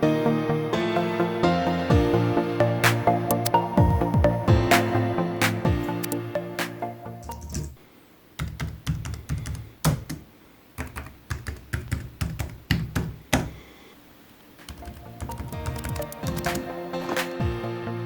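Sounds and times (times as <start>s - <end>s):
background music: 0.0s - 7.8s, 14.7s - 18.0s
keyboard typing clicks: 2.8s - 3.6s, 5.4s - 7.8s, 14.6s - 17.4s.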